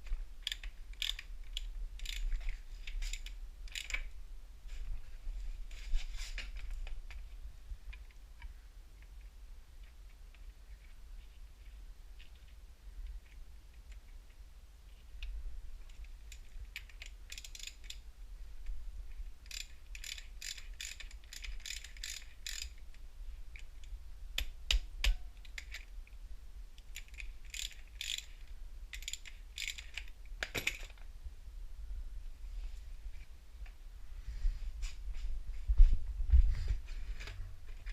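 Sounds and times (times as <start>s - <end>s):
ratchet wrench clicking: 0.4s - 2.3s, 3.1s - 4.0s, 16.3s - 18.0s, 19.4s - 22.8s, 27.0s - 30.1s.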